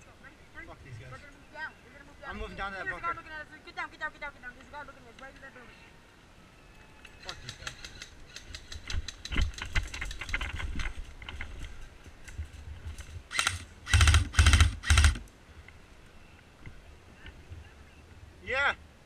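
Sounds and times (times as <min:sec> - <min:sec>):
airsoft guns clicking rapidly: 0:07.3 - 0:10.9, 0:13.3 - 0:15.2
loud bursts of gunfire: 0:13.3 - 0:15.2.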